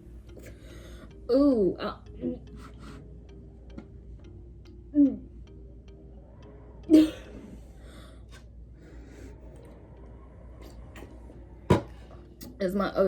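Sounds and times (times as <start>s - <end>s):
faint breaths: 0.3s - 1.3s, 2.4s - 3.4s, 5.7s - 12.5s.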